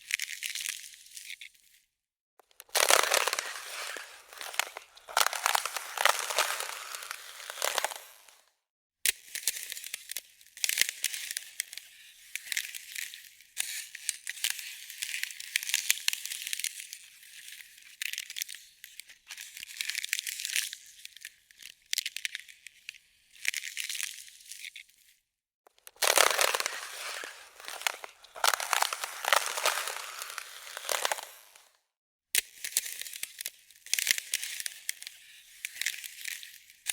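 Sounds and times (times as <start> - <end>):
ice crackling and crunching: 2.6 - 8.4, 25.9 - 31.7.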